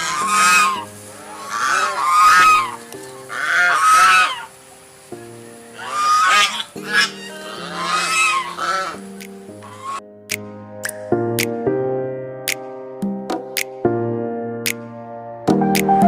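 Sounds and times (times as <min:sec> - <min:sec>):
animal calling loudly: 0:00.0 - 0:04.6, 0:05.8 - 0:10.0
background music: 0:00.0 - 0:16.0.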